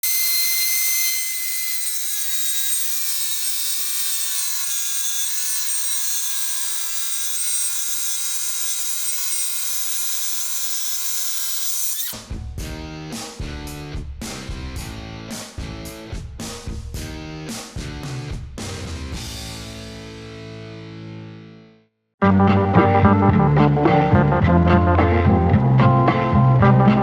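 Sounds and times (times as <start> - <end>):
milling machine spindle whine: 0.0 - 12.2.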